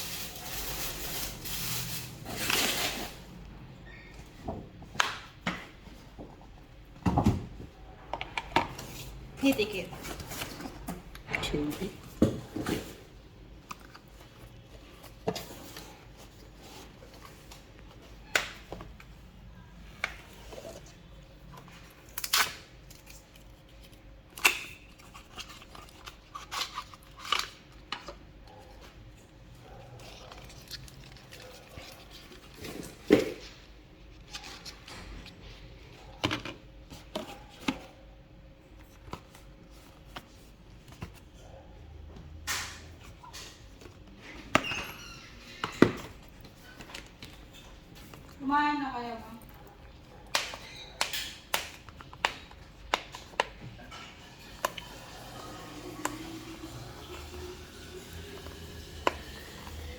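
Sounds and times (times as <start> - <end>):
packaging rustling and tearing: 0.0 - 3.3, 21.6 - 28.8, 29.7 - 35.7
packaging clicks and taps: 50.2 - 53.7.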